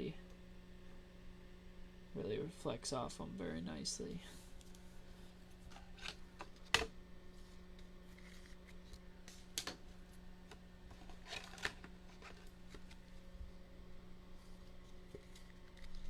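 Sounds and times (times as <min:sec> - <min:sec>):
faint steady hum: 0:00.0 - 0:16.0
trading cards flipped and rustling: 0:05.7 - 0:09.8, 0:14.9 - 0:16.0.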